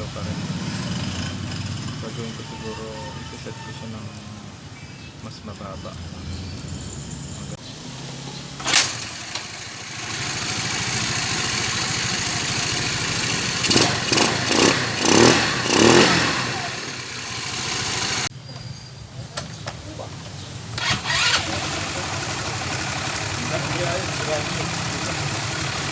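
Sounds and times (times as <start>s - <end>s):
scooter engine revving: 0.0s - 2.5s, 5.8s - 18.3s, 20.6s - 25.9s.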